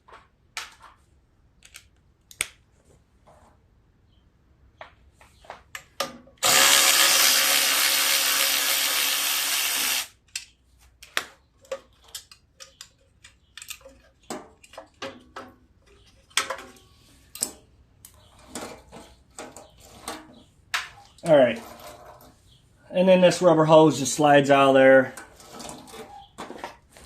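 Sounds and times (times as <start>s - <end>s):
power driver running: 6.4s - 10.1s
metal parts clicking and knocking: 10.3s - 22.3s.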